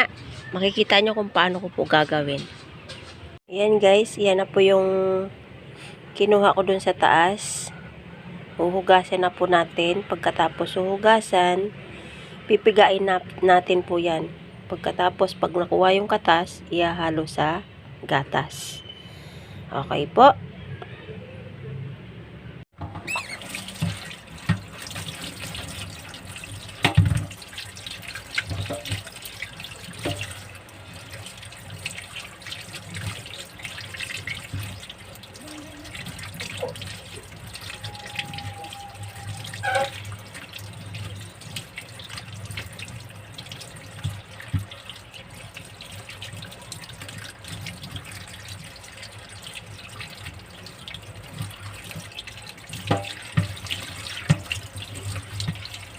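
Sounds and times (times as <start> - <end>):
tap water running into sink: 22.8 - 55.9.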